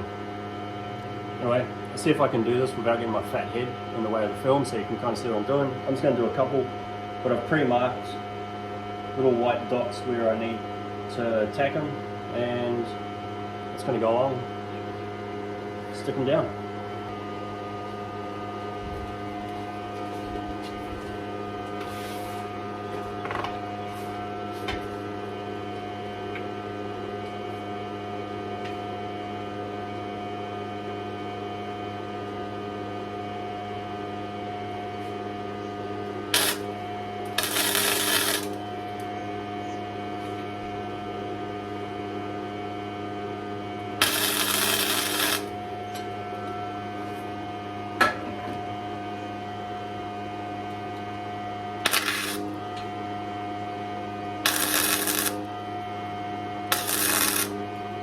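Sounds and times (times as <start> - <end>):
electrical hum: 0.0 - 58.0
tack welds crackling: 36.4 - 36.7, 37.3 - 38.6, 44.0 - 45.5, 51.9 - 52.5, 54.4 - 55.4, 56.7 - 57.5.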